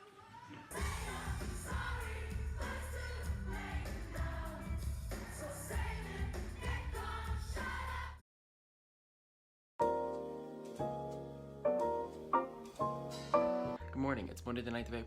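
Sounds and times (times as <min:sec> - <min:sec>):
pop music with singing: 0:00.0 - 0:08.2.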